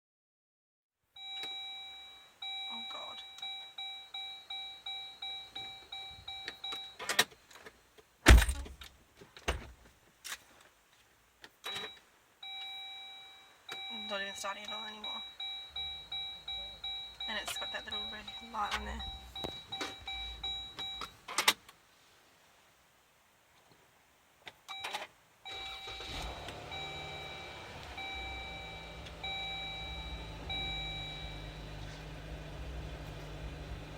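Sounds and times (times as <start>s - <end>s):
dashboard warning chime: 1.2s - 7.1s, 11.7s - 21.2s, 25.5s - 33.9s
ignition clicks: 24.7s - 33.9s
low hum: 26.2s - 33.9s.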